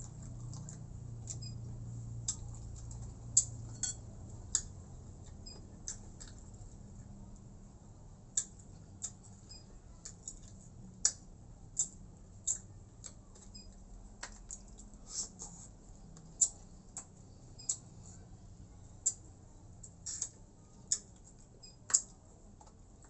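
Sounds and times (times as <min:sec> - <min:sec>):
person chewing food: 0:00.0 - 0:06.9, 0:08.3 - 0:18.0.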